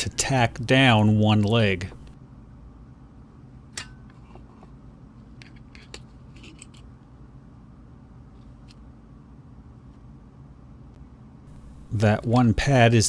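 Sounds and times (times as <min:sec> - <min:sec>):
steady low hum: 0:00.0 - 0:03.5, 0:09.0 - 0:13.0.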